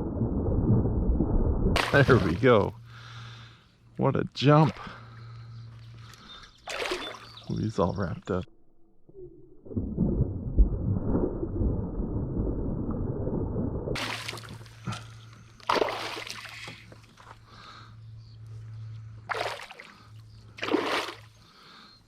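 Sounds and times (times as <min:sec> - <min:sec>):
water splashing and sloshing: 0:00.0 - 0:03.1, 0:04.5 - 0:07.6, 0:09.6 - 0:17.8, 0:19.1 - 0:21.6
fish thrashing at surface: 0:01.8 - 0:02.4, 0:06.7 - 0:07.3, 0:13.9 - 0:17.2, 0:20.6 - 0:21.3
faint low hum: 0:09.7 - 0:22.0.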